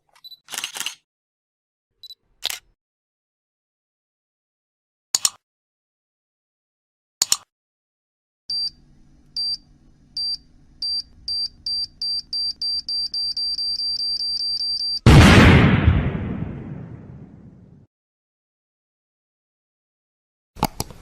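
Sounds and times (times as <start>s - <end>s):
electronic beeping: 10.2s - 15.0s
loud explosion: 15.1s - 17.8s.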